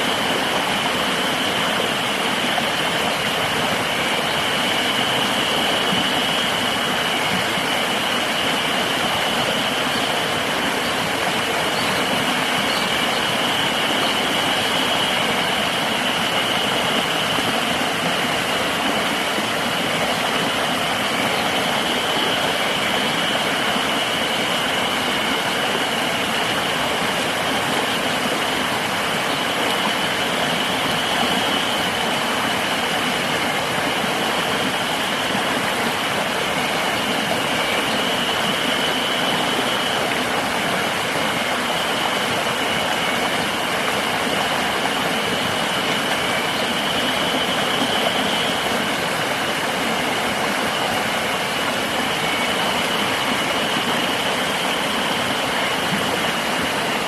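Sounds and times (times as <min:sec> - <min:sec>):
river water rushing: 0:00.0 - 0:57.0.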